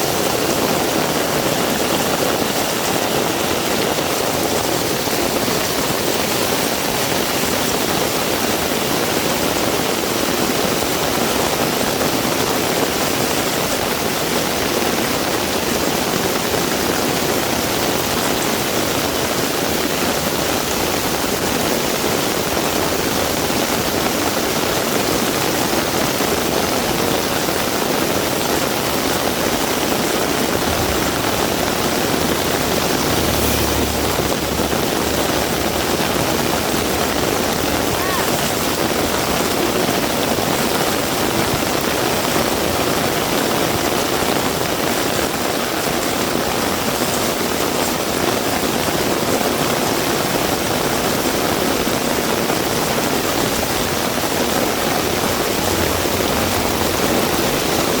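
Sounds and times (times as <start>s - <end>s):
heavy rain falling: 0.0s - 58.0s
short low rumble: 30.2s - 38.6s, 54.6s - 58.0s.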